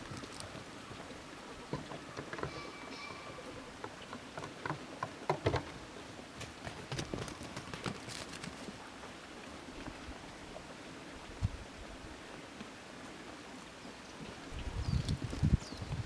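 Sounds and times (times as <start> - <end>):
goat hooves tapping on ground: 6.4 - 8.7.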